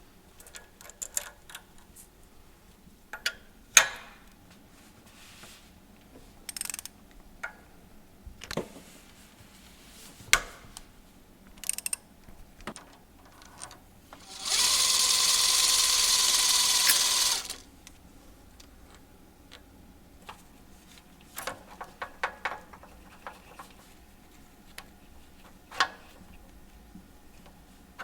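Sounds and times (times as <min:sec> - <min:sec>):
handheld power tool whirring: 0:14.2 - 0:17.7.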